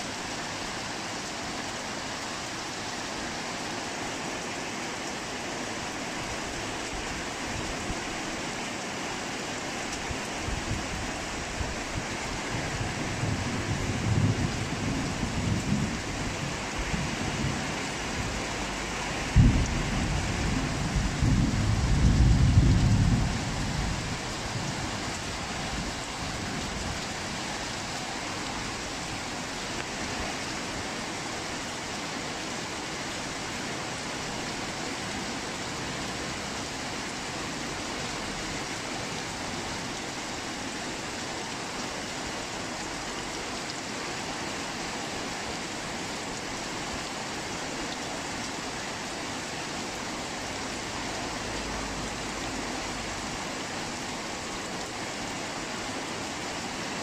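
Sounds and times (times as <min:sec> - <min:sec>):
heavy rain falling: 0:00.0 - 0:57.0
low rumble of thunder: 0:12.4 - 0:18.4, 0:19.2 - 0:27.0.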